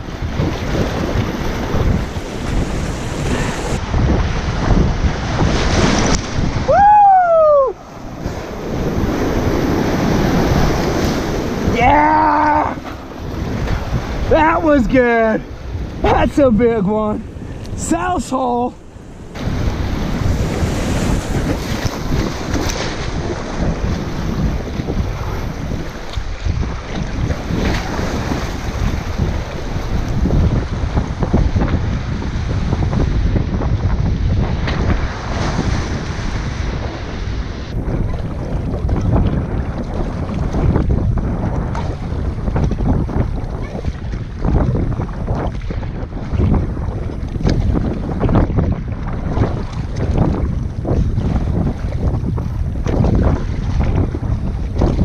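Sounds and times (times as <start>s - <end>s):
wind buffeting microphone: 0.0s - 55.0s
whitewater rapids rushing: 1.1s - 3.8s, 5.3s - 16.6s.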